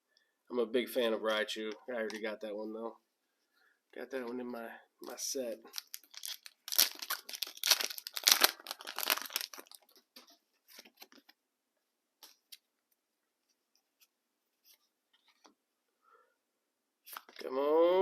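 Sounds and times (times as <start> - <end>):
cards rustling: 5.7 - 11.4
foil pack tearing: 5.8 - 9.8.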